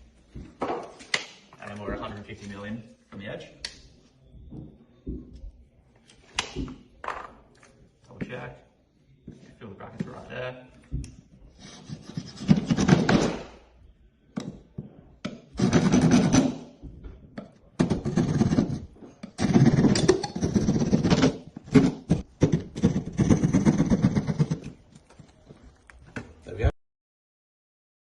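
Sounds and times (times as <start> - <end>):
hand saw cutting plasterboard: 15.6 - 16.6, 17.8 - 24.8.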